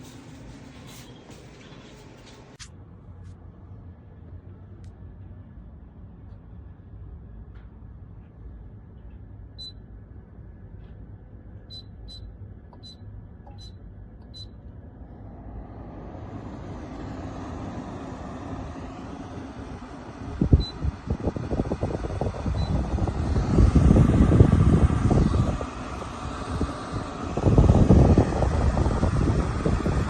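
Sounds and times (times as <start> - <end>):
air conditioner humming: 0.0 - 30.0
fan rushing air: 0.0 - 30.0.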